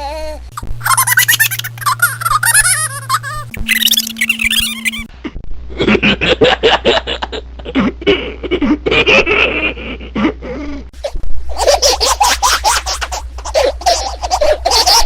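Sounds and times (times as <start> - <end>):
low steady hum: 0.0 - 15.0
baby giggling: 0.6 - 5.1, 11.0 - 15.0.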